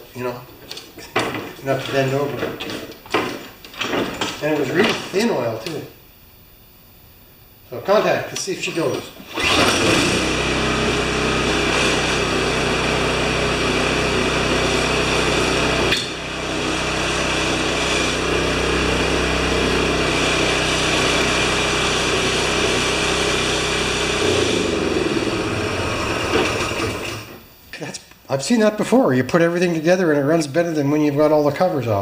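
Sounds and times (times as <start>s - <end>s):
snow thrower engine running: 9.4s - 27.4s.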